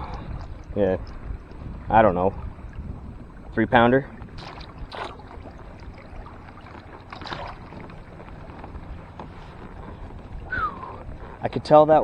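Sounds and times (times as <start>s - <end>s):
low wind rumble: 0.0s - 12.0s
water around kayak: 0.0s - 12.0s
short splashes or knocks: 2.4s - 11.0s.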